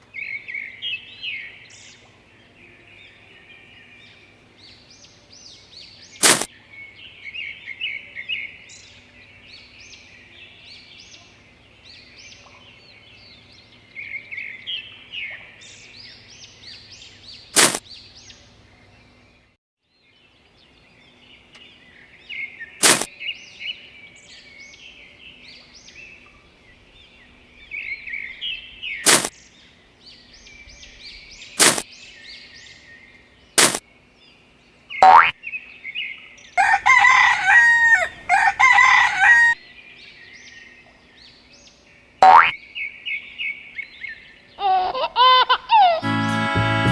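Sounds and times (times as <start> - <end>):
short sharp swishes: 6.2 - 6.5, 17.6 - 17.8, 22.8 - 23.1, 29.0 - 29.3, 31.6 - 31.8, 33.6 - 33.8
small birds chirping: 20.7 - 44.6.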